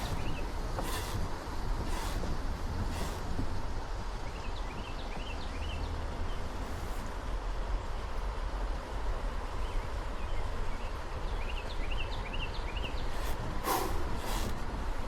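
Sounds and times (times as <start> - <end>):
brief hissing noises: 0.0 - 1.2, 1.8 - 2.2, 2.9 - 3.3, 13.1 - 14.6
river low rumble: 0.0 - 15.0.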